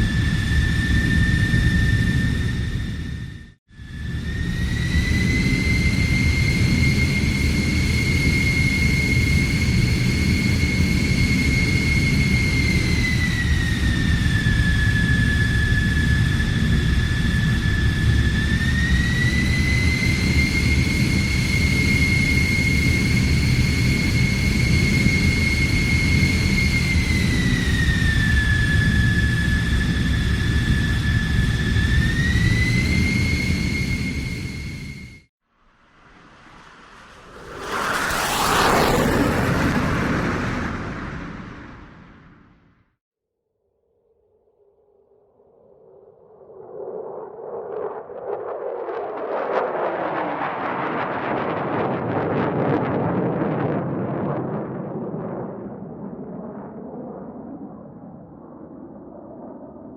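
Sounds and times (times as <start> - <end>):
high turbine whine: 0.0 - 42.7
jet engine low rumble: 0.0 - 43.0, 45.2 - 59.9.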